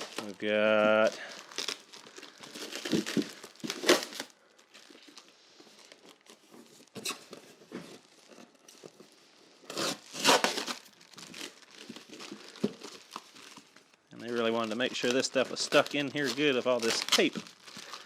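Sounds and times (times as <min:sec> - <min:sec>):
packing tape ripping: 0:00.0 - 0:04.4, 0:09.6 - 0:13.8, 0:14.4 - 0:18.0
packaging crinkling: 0:00.0 - 0:18.0.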